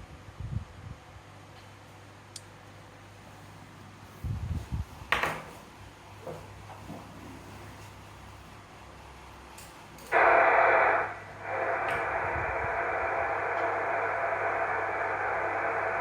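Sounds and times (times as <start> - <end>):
radio receiver static hiss: 10.1 - 16.0.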